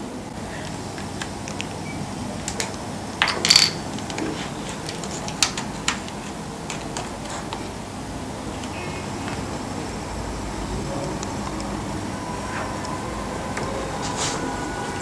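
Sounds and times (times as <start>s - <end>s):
small objects clicking on a desk: 2.5s - 7.4s.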